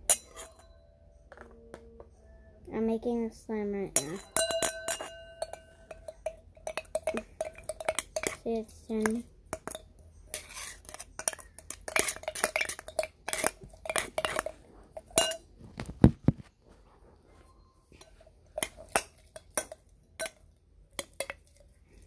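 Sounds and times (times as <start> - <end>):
metal spoon scraping a container: 0.1 - 0.8, 4.0 - 15.4.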